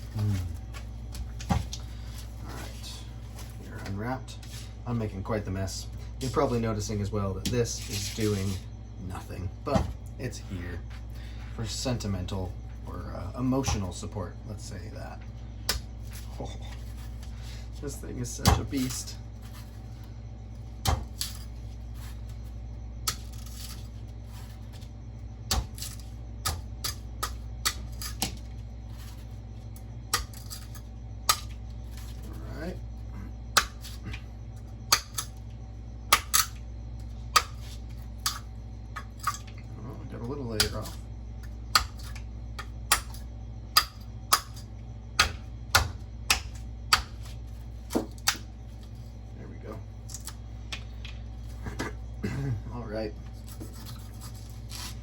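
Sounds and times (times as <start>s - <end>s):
knife chopping coconut: 33.5s - 34.0s, 45.2s - 47.3s.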